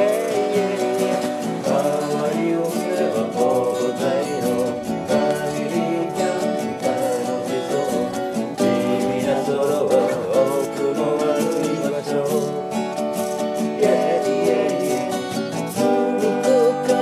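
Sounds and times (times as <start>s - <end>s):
acoustic guitar music: 0.0s - 17.0s.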